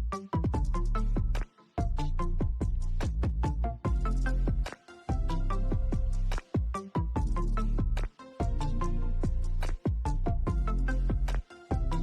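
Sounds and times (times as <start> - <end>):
electronic music with deep bass: 0.0 - 12.0.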